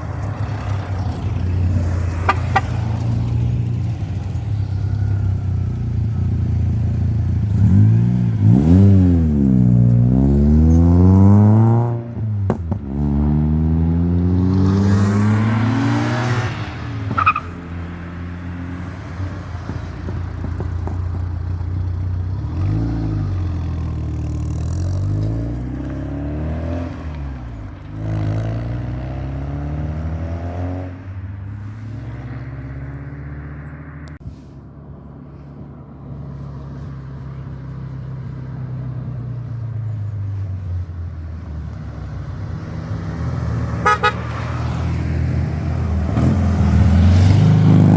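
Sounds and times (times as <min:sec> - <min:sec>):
rally car engines revving: 0:06.0 - 0:21.1, 0:21.8 - 0:34.2, 0:41.4 - 0:47.9.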